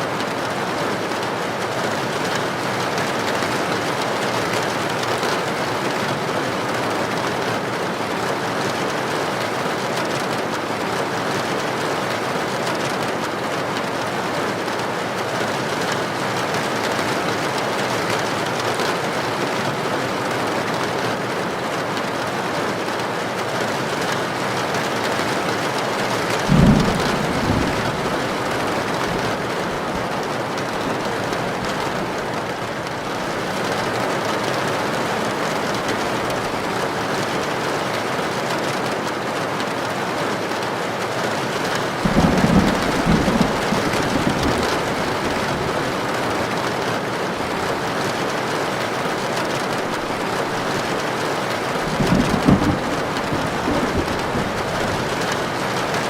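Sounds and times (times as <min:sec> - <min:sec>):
heavy rain on a tin roof: 0:00.0 - 0:56.0
thunder boom: 0:26.5 - 0:29.8.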